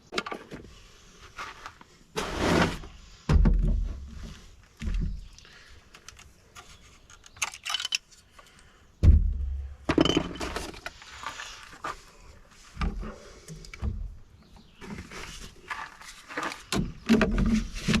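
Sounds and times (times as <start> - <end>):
objects clicking and rattling: 5.9 - 8.6
thump: 9.0 - 10.0.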